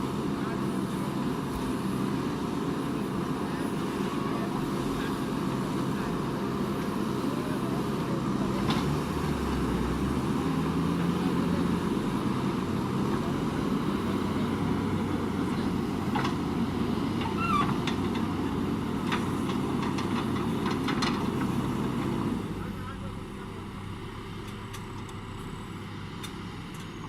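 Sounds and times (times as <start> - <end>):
diesel engine running: 0.0 - 27.0.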